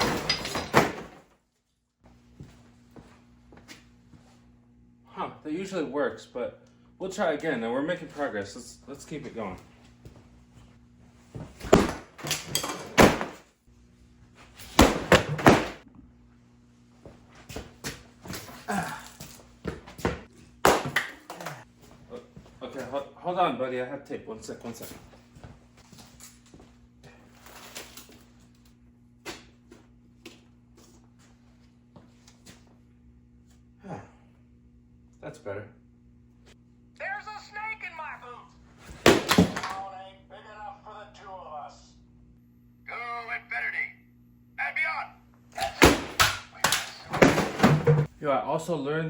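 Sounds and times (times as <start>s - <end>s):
steady low hum: 2.1s - 49.0s
loud thumps: 14.7s - 15.8s, 45.6s - 48.1s.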